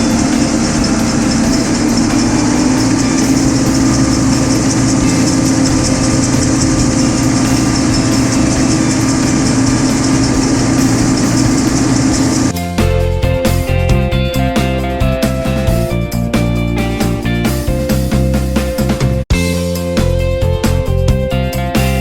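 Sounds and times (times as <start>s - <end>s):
tractor and baler drone: 0.0s - 12.6s.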